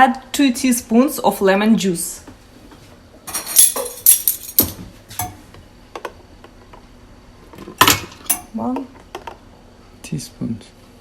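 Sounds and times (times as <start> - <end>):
kitchen utensils clattering: 3.3 - 5.5, 7.8 - 8.5.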